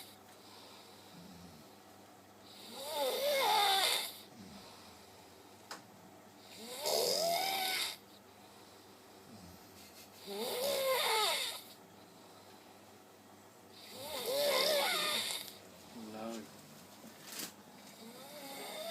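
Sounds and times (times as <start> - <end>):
person snoring: 2.5 - 4.7, 6.5 - 8.0, 10.2 - 11.7, 13.8 - 15.6, 18.0 - 18.9.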